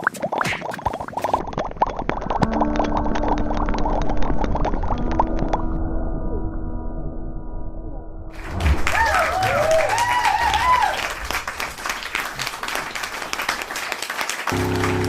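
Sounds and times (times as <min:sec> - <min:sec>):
crowd clapping: 0:08.3 - 0:15.0
crowd cheering and whooping: 0:08.4 - 0:11.5
muffled low hum: 0:14.6 - 0:15.0.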